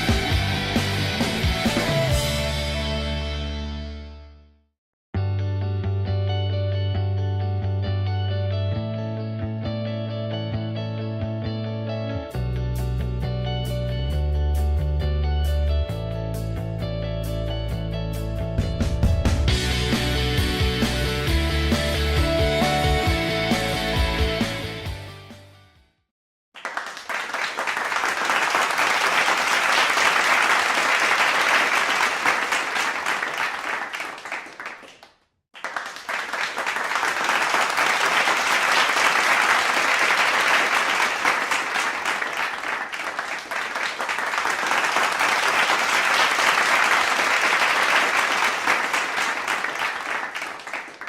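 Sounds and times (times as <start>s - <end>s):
crowd applause: 26.6s - 51.0s.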